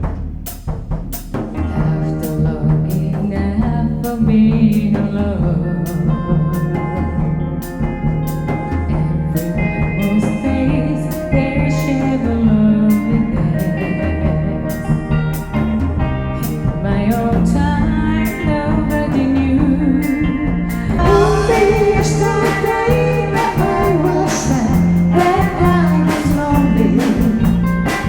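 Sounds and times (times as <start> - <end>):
drum kit beat: 0.0 - 28.0
keyboard bass line: 1.4 - 28.0
sustained keyboard and guitar notes: 1.6 - 28.0.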